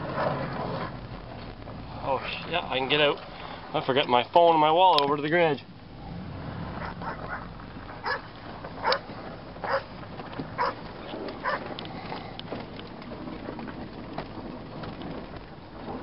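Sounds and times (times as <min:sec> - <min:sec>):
low background hum: 0:00.0 - 0:16.0
dog barking: 0:06.8 - 0:09.0, 0:09.6 - 0:09.9, 0:10.6 - 0:10.8, 0:11.4 - 0:11.6.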